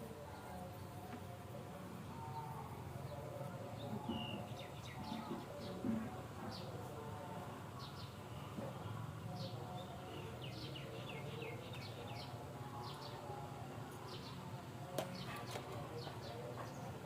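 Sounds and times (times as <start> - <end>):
birds chirping: 2.1 - 17.0.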